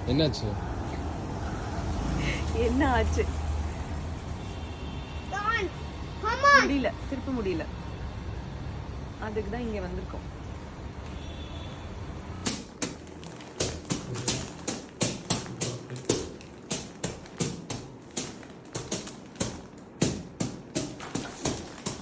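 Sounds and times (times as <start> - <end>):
hands tapping on hard surface: 12.5 - 22.0.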